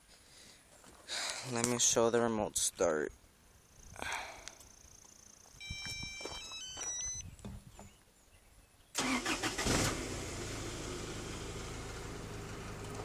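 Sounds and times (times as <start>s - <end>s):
electronic beeps: 5.6s - 7.3s
starter motor cranking: 9.0s - 10.2s
engine idling: 9.0s - 13.0s.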